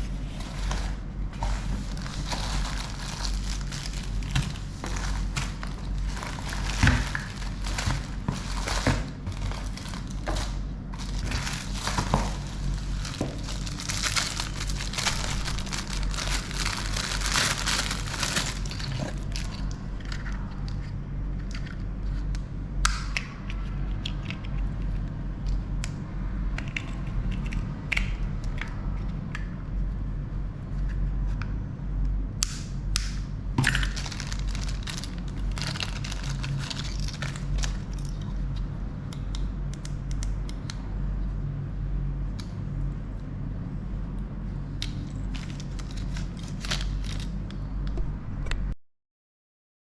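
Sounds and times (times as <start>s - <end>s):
plastic and cardboard crinkling: 0.0s - 19.8s, 33.6s - 38.2s, 45.2s - 47.4s
steady low hum: 0.0s - 48.8s.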